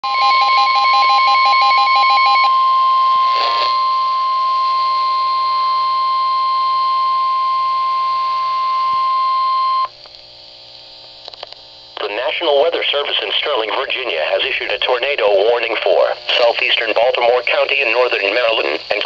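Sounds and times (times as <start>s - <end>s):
steady alarm tone: 0.0s - 9.9s.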